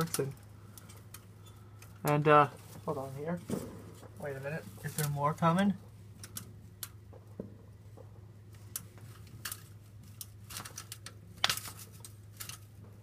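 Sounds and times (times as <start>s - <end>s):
steady low hum: 0.0s - 13.0s
distant fireworks popping: 3.4s - 4.9s, 7.0s - 8.3s.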